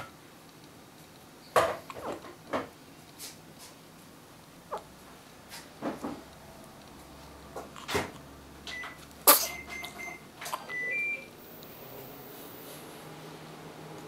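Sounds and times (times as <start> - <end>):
child sneezing: 9.2 - 9.6.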